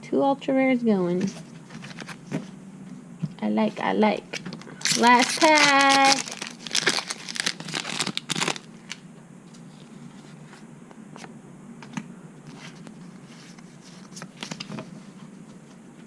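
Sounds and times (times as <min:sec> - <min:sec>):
low steady hum: 0:00.0 - 0:16.0
trading cards being handled: 0:04.3 - 0:09.0.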